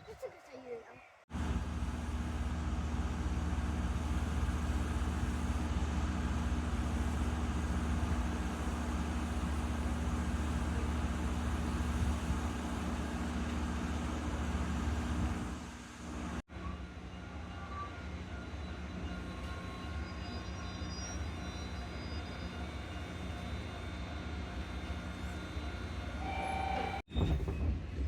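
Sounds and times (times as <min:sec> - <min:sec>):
electric train running: 0:16.9 - 0:28.0.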